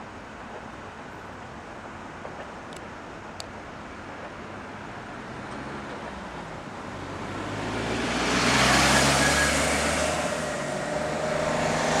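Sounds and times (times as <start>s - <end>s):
vehicle passing by: 6.9s - 12.0s.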